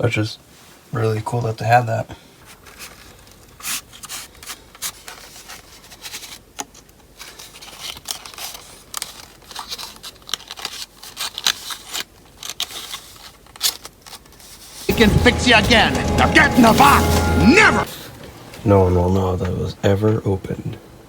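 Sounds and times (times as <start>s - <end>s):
paper and cardboard rustling: 2.4s - 17.7s.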